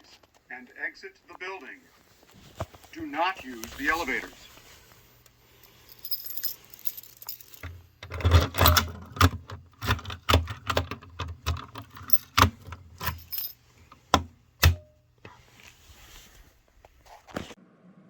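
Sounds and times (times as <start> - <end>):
jangling clatter of clinks: 5.6 - 7.8, 11.9 - 12.4, 13.0 - 13.6.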